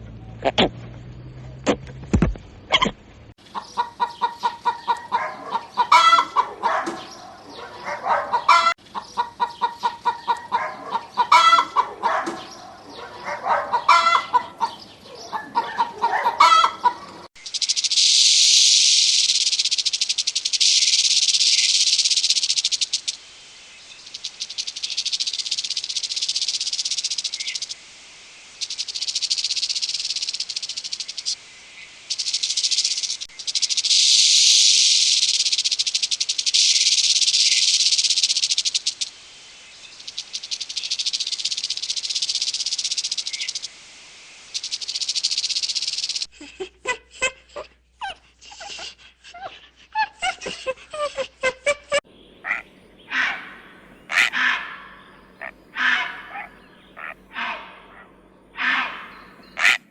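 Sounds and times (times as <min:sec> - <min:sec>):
animal buzzing rattle: 0:17.4 - 0:23.2, 0:24.0 - 0:27.8, 0:28.5 - 0:31.4, 0:32.1 - 0:39.2, 0:39.8 - 0:43.7, 0:44.5 - 0:46.3, 0:52.4 - 0:59.8
short animal calls: 0:52.4 - 0:59.8.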